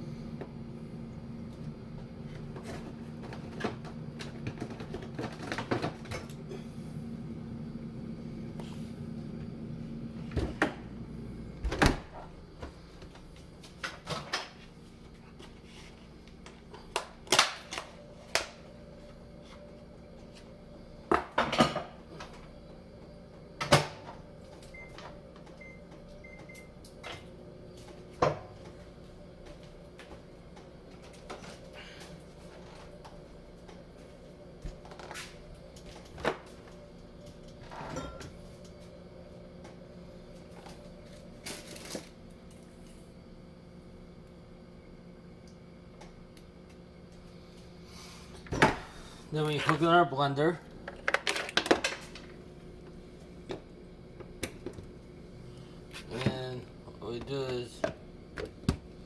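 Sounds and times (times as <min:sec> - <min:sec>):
appliance hum: 0:00.0 - 0:59.0
kitchen knocks and clatters: 0:21.1 - 0:21.9.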